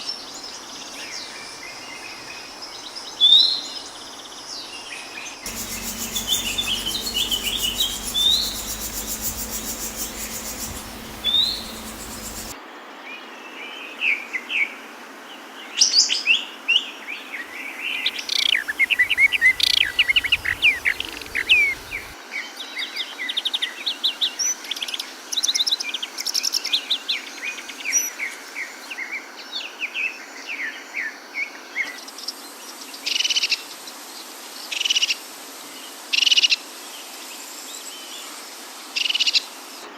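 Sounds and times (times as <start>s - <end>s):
fast high pulsing buzz: 5.5s - 12.6s, 18.6s - 22.2s
songbirds chirping and singing: 5.5s - 12.6s, 18.7s - 22.2s.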